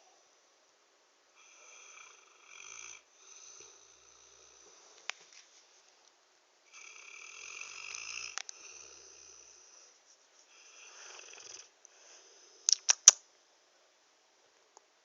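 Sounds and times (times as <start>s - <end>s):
high whistling snoring: 1.4s - 5.0s, 6.7s - 12.7s
sharp clicks: 12.7s - 13.2s.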